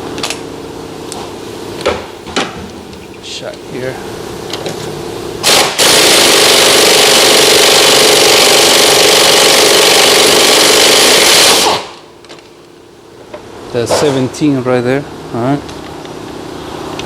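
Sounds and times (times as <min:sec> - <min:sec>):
impact wrench running: 0:05.4 - 0:12.0.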